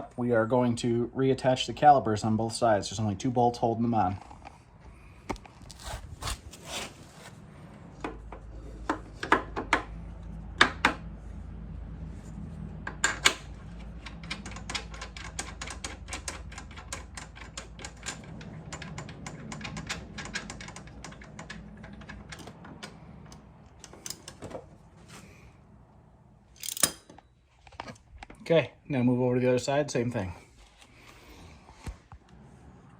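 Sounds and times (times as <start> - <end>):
ratchet clicking: 24.0 - 24.3, 26.6 - 27.1.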